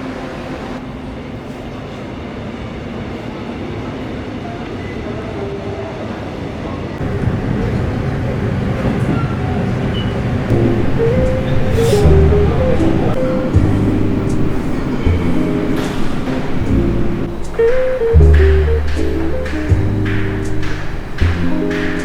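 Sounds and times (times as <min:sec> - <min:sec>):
vehicle rumble: 0:10.5 - 0:22.0.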